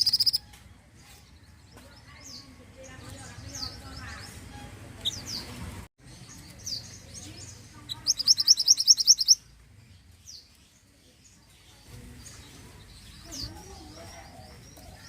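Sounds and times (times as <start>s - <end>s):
bird trilling: 0.0s - 0.5s, 3.0s - 5.5s, 6.7s - 9.5s
bird chirping: 0.0s - 15.0s.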